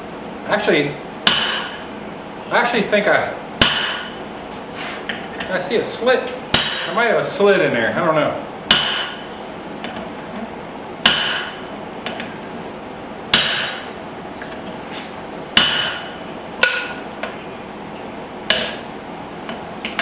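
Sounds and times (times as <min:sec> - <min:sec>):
hammer striking metal punch: 0:01.3 - 0:01.9, 0:03.6 - 0:04.2, 0:06.5 - 0:07.0, 0:08.7 - 0:10.0, 0:11.0 - 0:12.3, 0:13.3 - 0:13.9, 0:15.6 - 0:17.0, 0:18.5 - 0:18.9.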